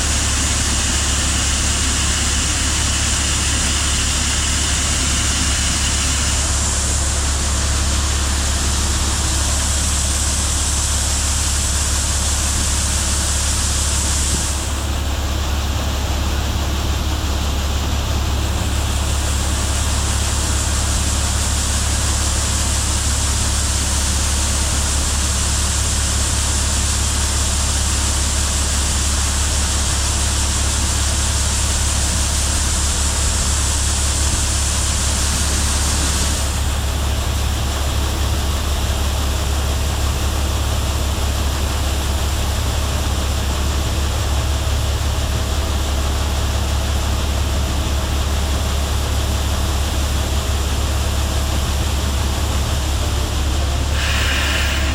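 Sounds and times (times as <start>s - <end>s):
wind and road noise hiss: 52.0s - 54.9s.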